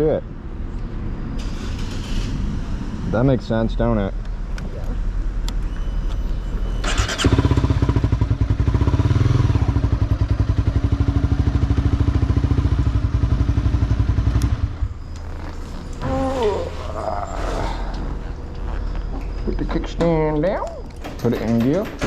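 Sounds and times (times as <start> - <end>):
motorcycle engine running: 6.8 - 16.4.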